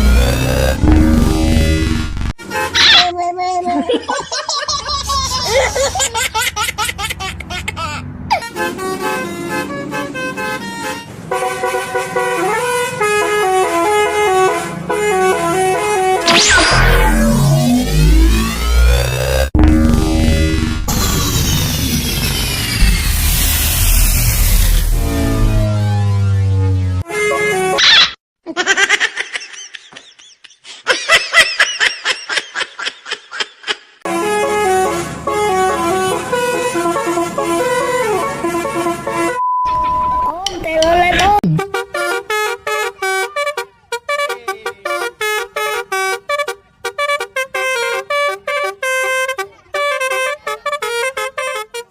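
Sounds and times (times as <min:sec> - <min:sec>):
bus horn playing a melody: 0:00.0 - 0:03.0, 0:08.0 - 0:20.9, 0:24.4 - 0:27.9, 0:34.0 - 0:39.4, 0:41.6 - 0:51.9.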